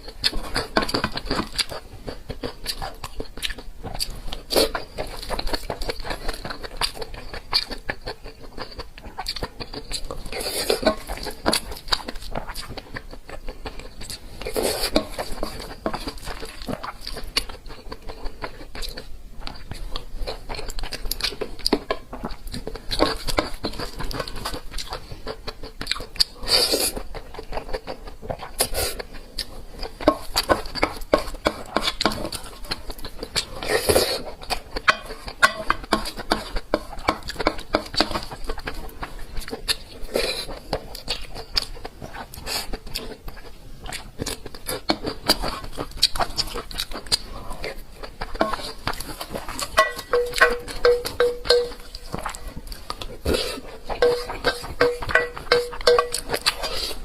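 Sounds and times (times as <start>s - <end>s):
person chewing: 0.0s - 57.0s.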